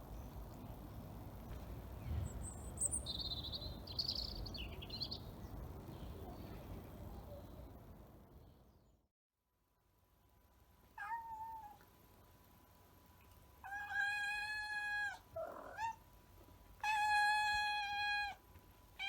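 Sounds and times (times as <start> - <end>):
cat meowing: 11.0 - 11.8, 13.6 - 16.0, 16.8 - 18.4.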